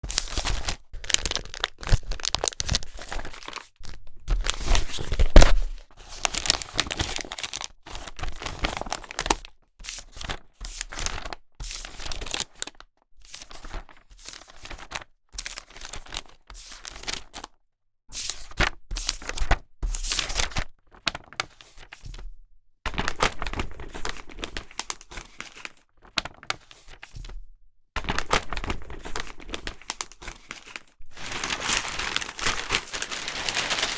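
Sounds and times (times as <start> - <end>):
newspaper pages rustling and tearing: 0.0 - 17.5, 28.5 - 33.9.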